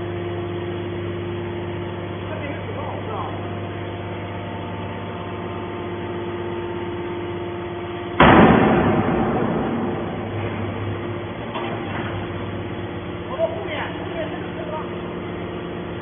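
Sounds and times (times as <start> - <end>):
loud metallic crash: 8.2 - 11.6.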